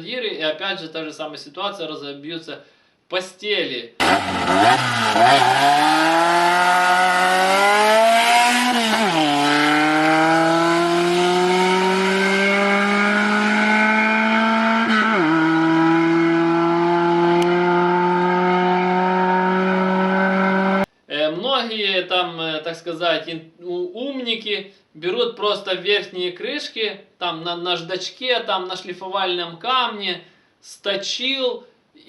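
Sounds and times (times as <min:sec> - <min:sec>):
engine running: 0:04.0 - 0:20.8.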